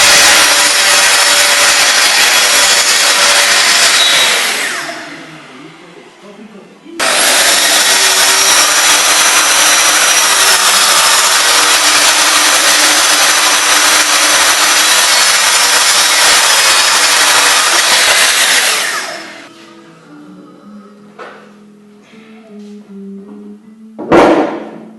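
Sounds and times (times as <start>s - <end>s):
electric power tool cutting wood: 0.0s - 5.5s, 7.0s - 19.5s.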